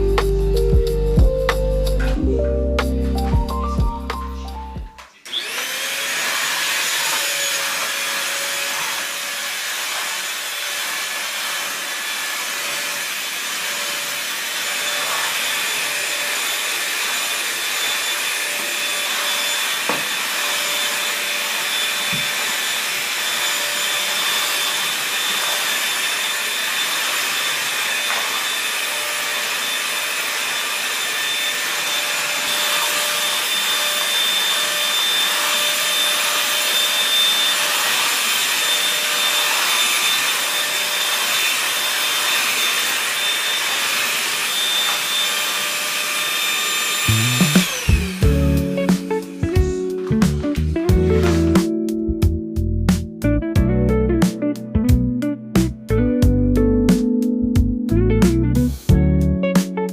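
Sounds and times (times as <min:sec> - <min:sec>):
vacuum cleaner running: 0:03.0 - 0:51.9.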